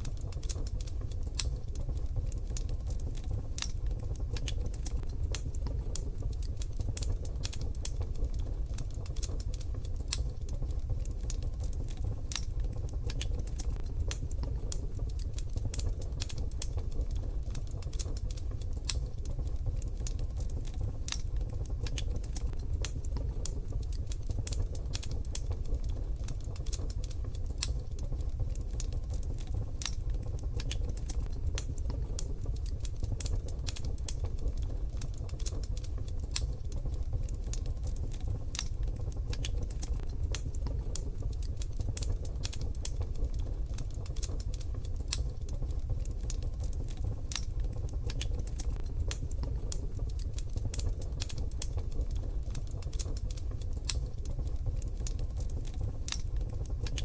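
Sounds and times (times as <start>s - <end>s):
wood fire crackling in stove: 0.0s - 57.0s.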